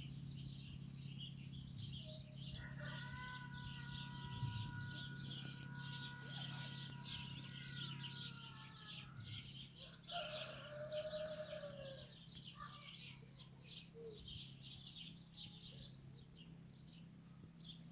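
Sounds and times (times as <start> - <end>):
small birds chirping: 0.0 - 17.9
rooster crowing: 2.5 - 12.2.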